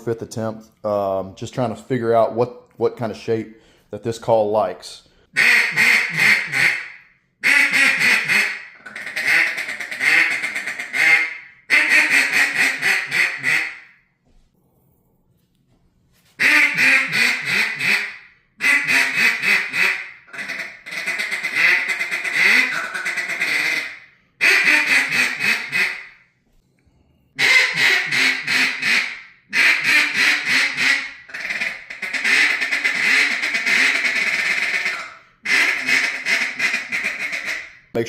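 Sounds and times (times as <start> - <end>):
duck call quacks: 5.4 - 13.9, 16.4 - 26.2, 27.4 - 37.8.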